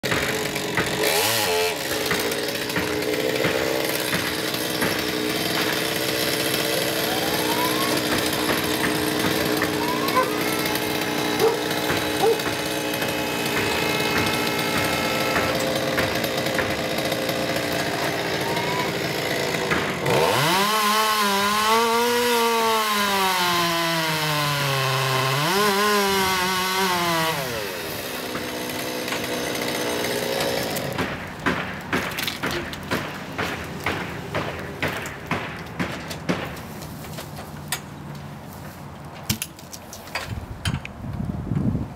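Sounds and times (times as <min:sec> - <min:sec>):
chainsaw running: 0:00.0 - 0:37.1
sharp knocks: 0:01.8 - 0:05.9, 0:08.0 - 0:09.8, 0:11.0 - 0:17.1, 0:30.8 - 0:36.9.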